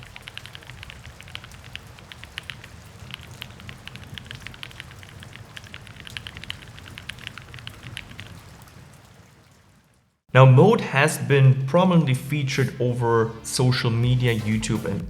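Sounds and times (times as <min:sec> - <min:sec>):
mechanical keyboard typing: 0:00.0 - 0:08.3.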